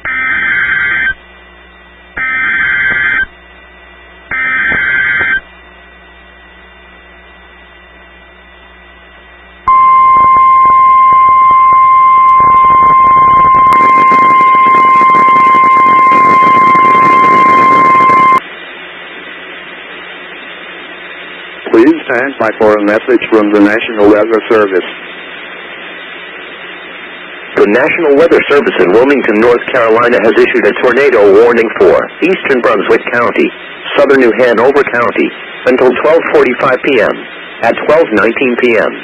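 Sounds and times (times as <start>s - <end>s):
shrill data bursts: 0.0s - 1.2s, 2.2s - 3.3s, 4.3s - 5.4s, 9.7s - 18.4s
steady alarm tone: 0.0s - 6.1s, 9.6s - 18.4s
radio hiss: 2.2s - 3.3s, 4.3s - 5.4s, 12.4s - 39.0s.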